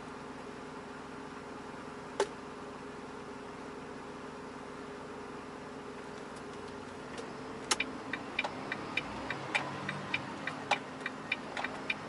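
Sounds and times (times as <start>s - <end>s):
truck cab hum: 0.0s - 12.0s
turn signal clicking: 6.2s - 12.0s.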